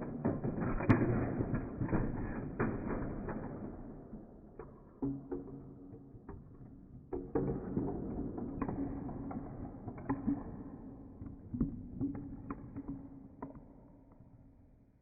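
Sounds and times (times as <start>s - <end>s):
objects clicking and creaking: 0.0s - 3.8s.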